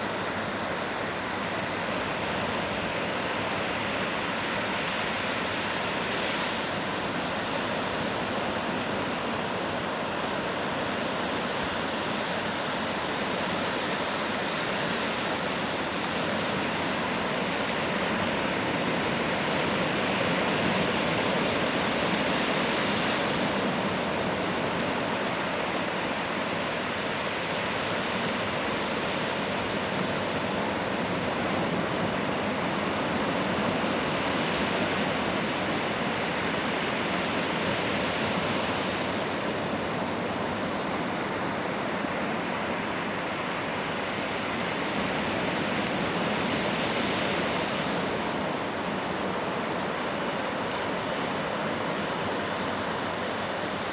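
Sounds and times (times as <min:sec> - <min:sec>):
sea waves washing onto beach: 0:00.0 - 0:53.9.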